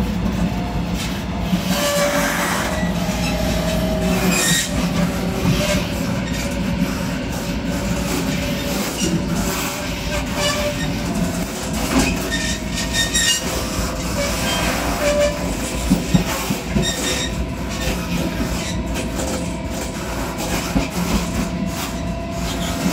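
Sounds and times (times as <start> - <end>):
train rumbling: 0.0 - 22.9.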